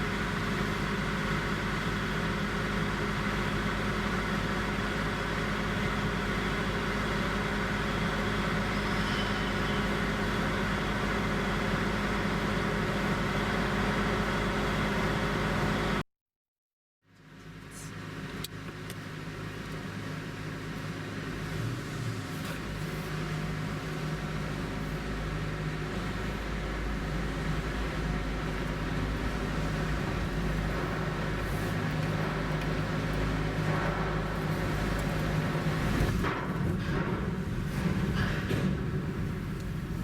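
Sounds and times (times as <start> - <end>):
tyre and road noise: 20.9 - 40.0
car engine humming: 25.9 - 36.2.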